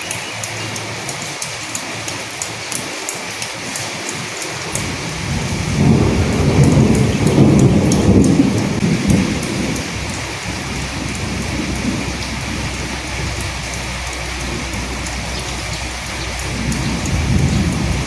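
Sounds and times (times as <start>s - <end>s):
rain drops ticking: 0.0s - 18.0s
thunder rumbling: 4.6s - 18.0s.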